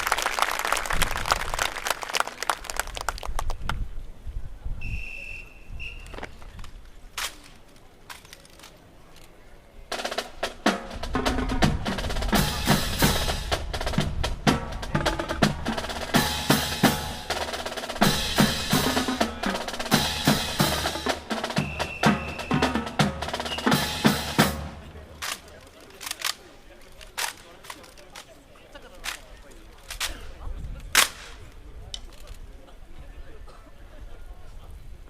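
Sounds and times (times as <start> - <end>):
snare drum cadence with rolls: 9.9 - 25.6
lone clicks: 25.2 - 28.4.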